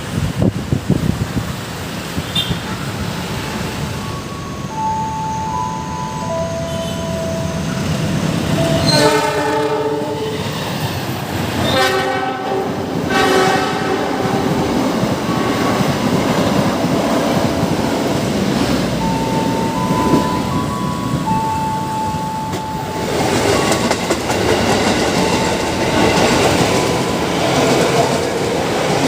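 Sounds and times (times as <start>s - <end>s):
train rumble and wheel clatter: 0.0s - 29.0s
train horn blasts: 6.4s - 10.6s, 11.6s - 14.7s.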